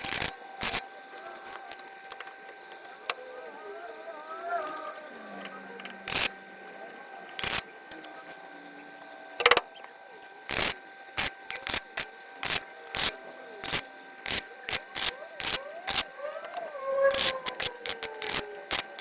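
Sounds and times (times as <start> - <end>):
welding arc crackle bursts: 0.0 - 0.8, 6.0 - 6.3, 10.5 - 16.0, 17.1 - 19.0.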